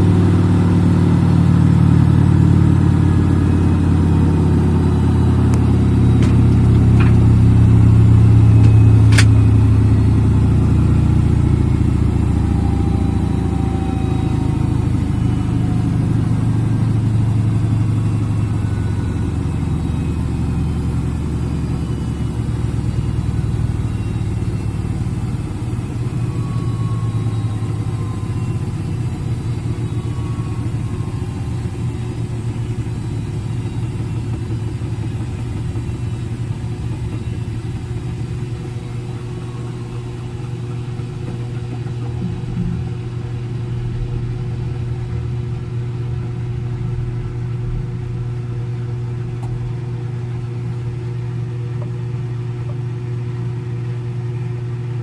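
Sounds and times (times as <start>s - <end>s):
washing machine spinning: 0.0s - 55.0s.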